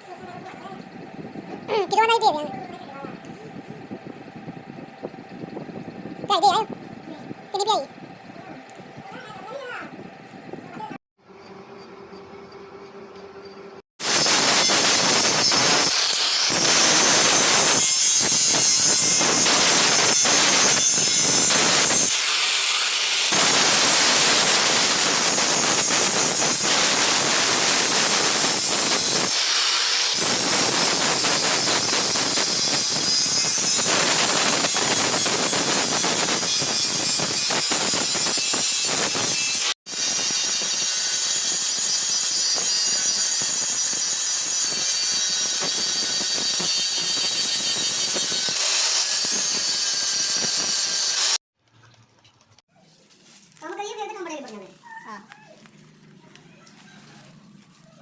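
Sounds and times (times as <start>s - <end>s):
workshop machinery hissing and clattering: 14.0s - 51.4s.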